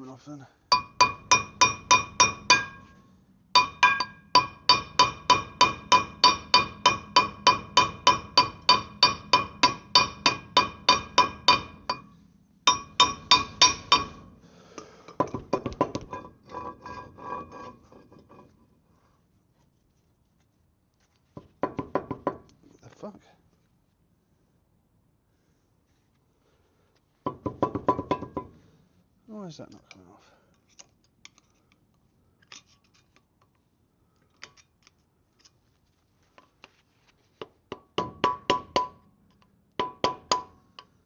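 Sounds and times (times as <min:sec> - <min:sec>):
hammer striking metal hub: 0:00.7 - 0:03.0, 0:03.6 - 0:12.1, 0:12.7 - 0:14.3, 0:27.3 - 0:28.6, 0:37.7 - 0:40.9.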